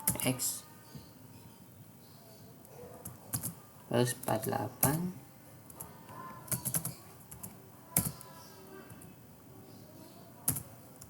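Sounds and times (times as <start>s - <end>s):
computer keyboard keystrokes: 6.5s - 8.2s.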